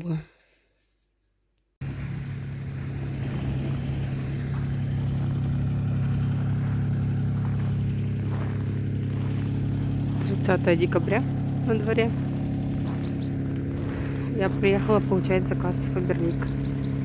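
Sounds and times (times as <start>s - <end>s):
car engine running: 1.8s - 17.0s.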